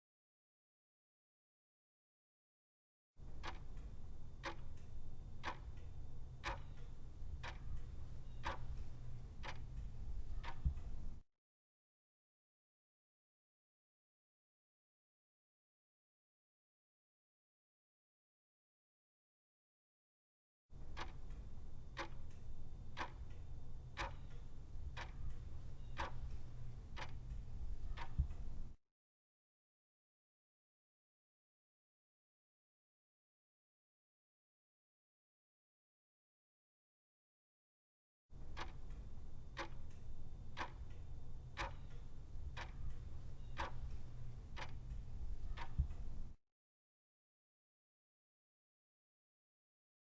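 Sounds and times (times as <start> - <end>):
clock ticking: 3.2 - 11.2, 20.8 - 28.8, 38.4 - 46.4
low steady hum: 3.2 - 11.2, 20.8 - 28.8, 38.4 - 46.4.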